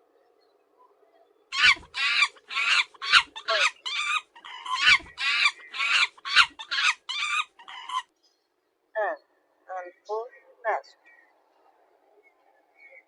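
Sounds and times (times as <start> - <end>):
monkey calling: 1.5 - 8.0.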